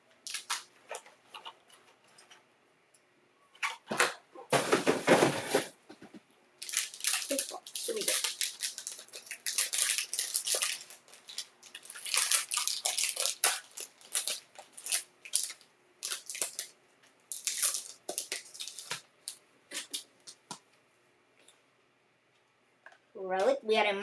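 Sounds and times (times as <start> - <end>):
plastic wrapping crackling: 0.2 - 2.4, 6.6 - 20.6.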